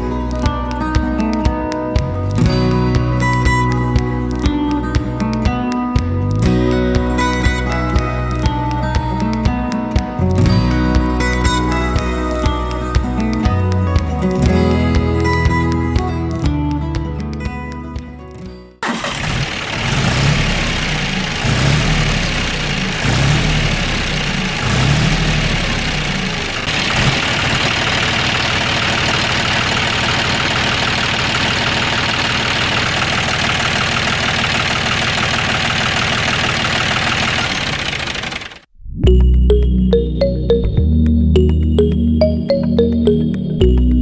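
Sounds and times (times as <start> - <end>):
engine running: 18.8 - 38.7.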